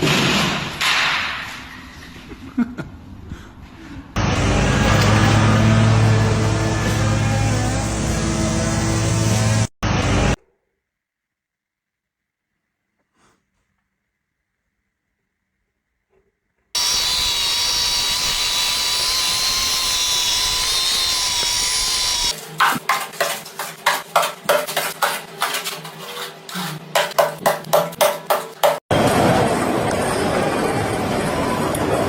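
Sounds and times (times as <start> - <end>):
power tool whining: 4.2 - 9.7, 16.8 - 22.4.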